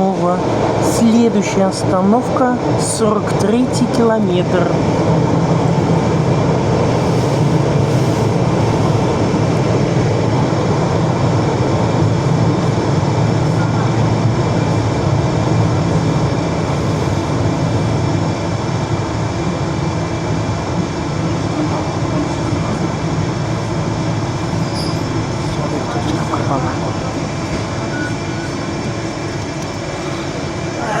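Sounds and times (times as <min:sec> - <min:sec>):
train wheels rumbling on rails: 0:00.0 - 0:31.0.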